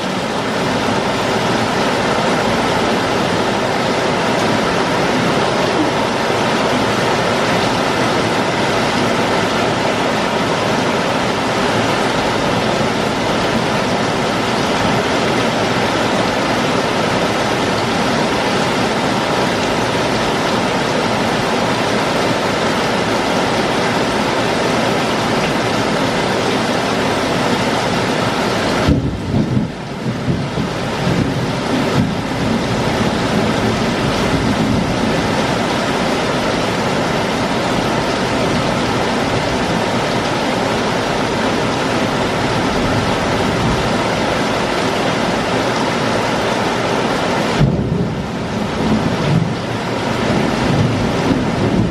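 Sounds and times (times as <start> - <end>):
heavy rain pouring: 0.0 - 51.9.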